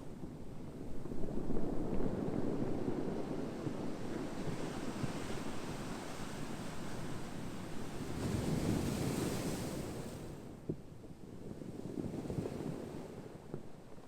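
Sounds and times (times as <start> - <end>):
ocean waves breaking on shore: 5.4 - 10.4.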